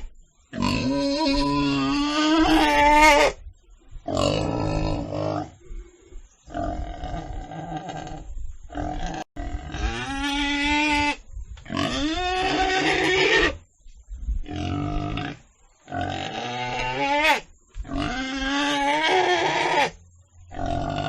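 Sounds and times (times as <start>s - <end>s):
pig squealing: 0.6s - 3.4s, 9.0s - 13.6s, 16.0s - 20.0s.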